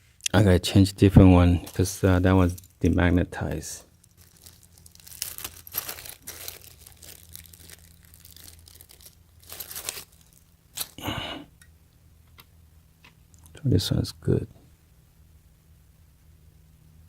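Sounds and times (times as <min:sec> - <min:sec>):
faint steady hum: 0:00.0 - 0:17.0
screwdriver bits rustling: 0:01.6 - 0:03.1, 0:04.0 - 0:11.0.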